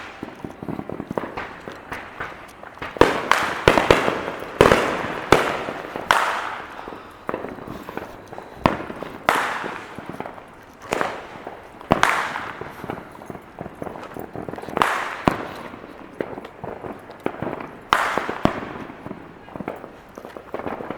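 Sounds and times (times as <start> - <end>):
fireworks exploding: 0.0 - 20.9.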